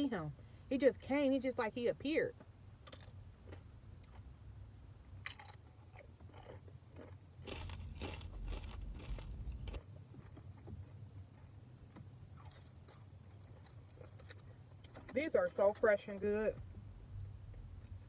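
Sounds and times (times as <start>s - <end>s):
chewing crisp chips: 2.7s - 15.8s.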